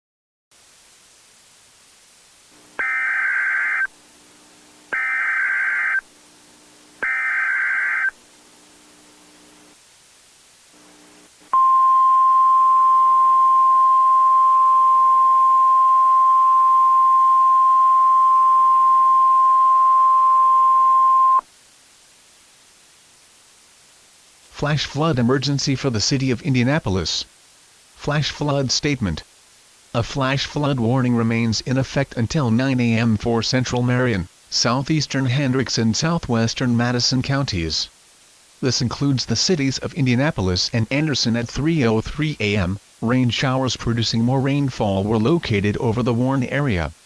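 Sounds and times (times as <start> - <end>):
data tone bursts: 2.8 - 3.9, 4.9 - 6.0, 7.0 - 8.2, 11.5 - 21.4
steady warning alarm tone: 2.8 - 3.9, 5.0 - 6.0, 7.0 - 8.2.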